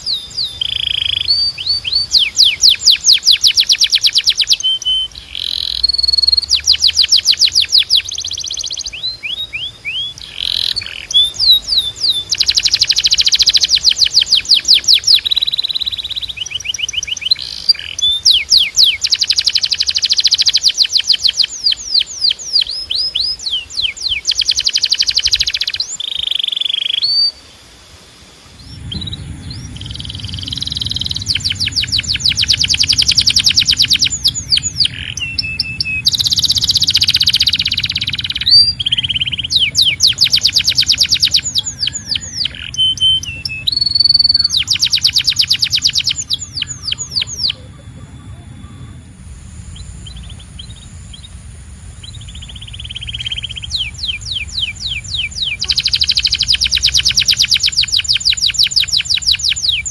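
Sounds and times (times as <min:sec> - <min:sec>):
canary singing trills: 0:00.0 - 0:27.6, 0:28.5 - 0:59.9
low rumble: 0:28.2 - 0:55.6.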